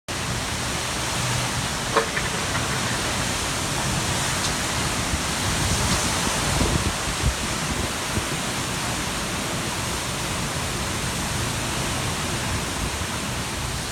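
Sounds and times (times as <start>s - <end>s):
wind and rain roaring: 0.1s - 13.9s.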